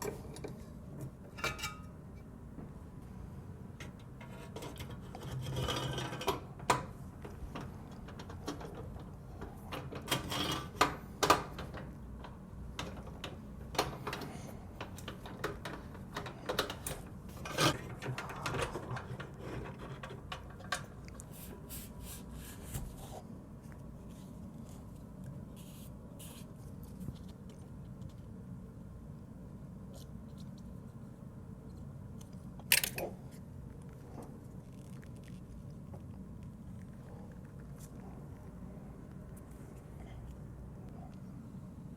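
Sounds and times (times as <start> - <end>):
computer parts clicking and knocking: 3.8 - 20.9.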